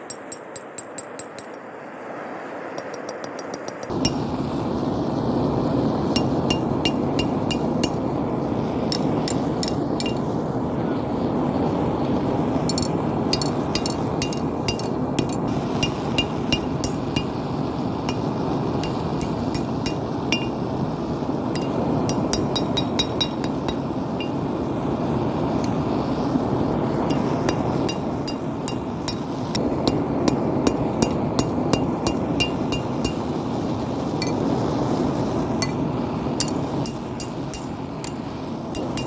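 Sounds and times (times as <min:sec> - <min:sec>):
hammer striking metal on anvil: 0:00.0 - 0:01.6, 0:02.8 - 0:04.4, 0:06.2 - 0:08.2, 0:08.9 - 0:10.4, 0:12.7 - 0:20.6, 0:21.6 - 0:24.6, 0:27.1 - 0:33.4, 0:34.2 - 0:34.4, 0:35.6 - 0:35.8, 0:36.4 - 0:39.0
steady rushing noise: 0:02.7 - 0:39.0.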